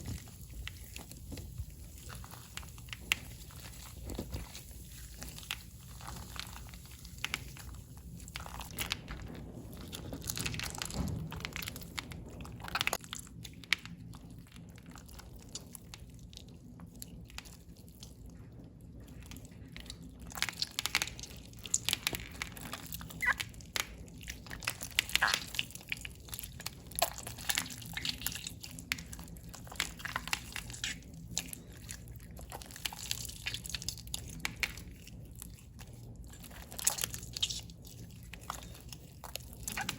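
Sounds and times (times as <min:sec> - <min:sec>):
hands kneading sticky slime: 0:00.0 - 0:39.9.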